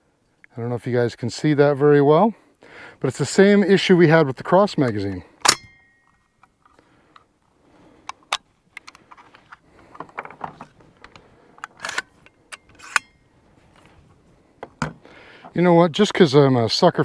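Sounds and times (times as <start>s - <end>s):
rifle being handled clatter: 8.0s - 15.6s.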